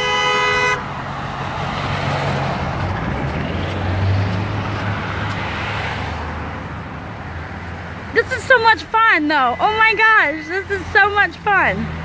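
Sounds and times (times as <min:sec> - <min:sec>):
car horn held steady: 0:00.0 - 0:00.9
road traffic passing: 0:00.0 - 0:12.0.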